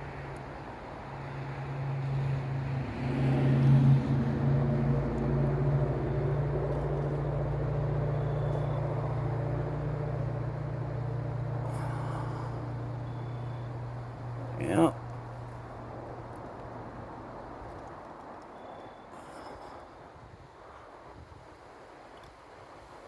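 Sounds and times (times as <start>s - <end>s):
vehicle engine humming: 1.1s - 18.4s.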